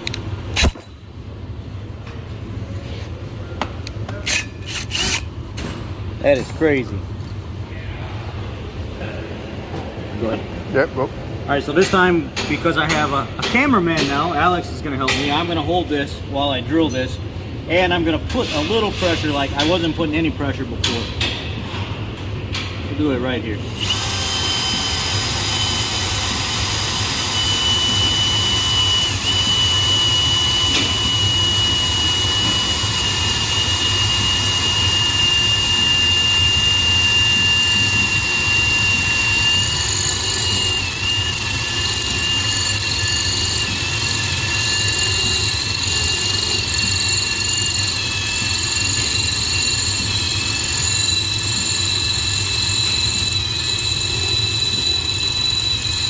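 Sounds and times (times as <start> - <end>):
power drill whining under load: 4.6 - 5.3, 23.8 - 56.0.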